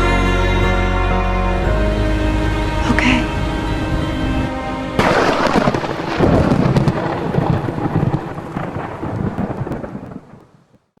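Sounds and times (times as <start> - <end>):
thunder: 5.0 - 10.4
rain: 5.0 - 10.7.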